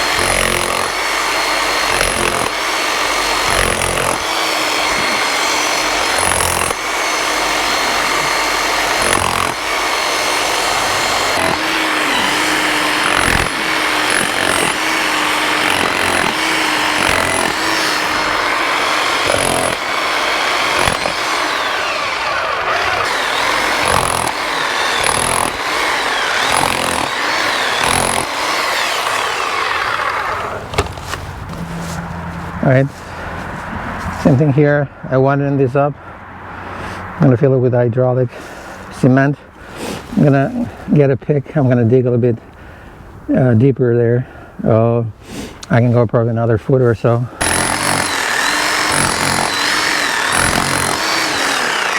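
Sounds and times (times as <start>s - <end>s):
chipping hammer on concrete: 0.0s - 21.8s, 22.9s - 29.5s, 47.4s - 51.9s.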